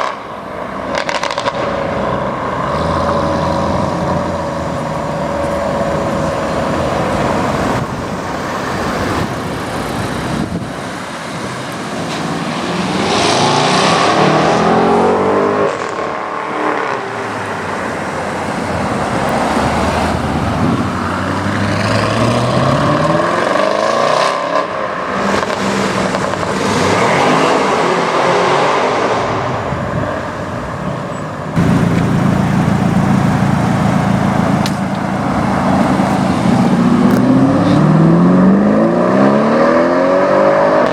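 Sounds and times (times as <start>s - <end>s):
cars accelerating hard: 0.0s - 40.9s
loud steady engine note: 1.2s - 12.9s, 29.2s - 38.4s.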